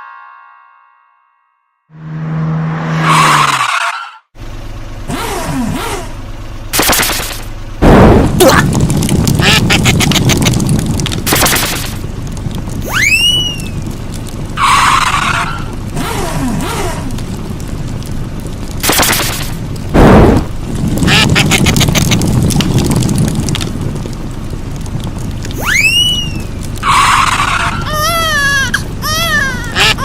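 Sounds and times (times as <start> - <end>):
low steady rumble: 4.4 - 30.0
short loud noise bursts: 18.8 - 21.7.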